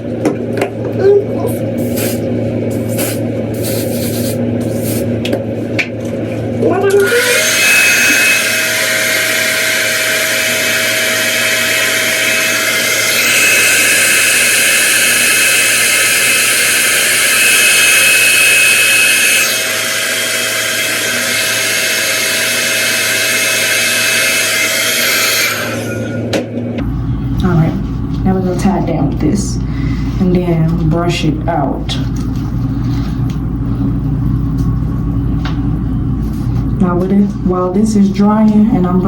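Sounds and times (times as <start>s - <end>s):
hair dryer blowing: 6.6s - 26.6s.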